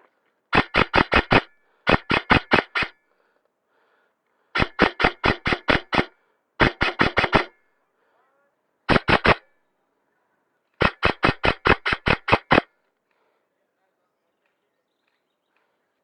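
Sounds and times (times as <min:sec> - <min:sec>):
airsoft rifle rapid shots: 0:00.5 - 0:03.0, 0:04.6 - 0:07.6, 0:08.9 - 0:09.5, 0:10.8 - 0:12.7.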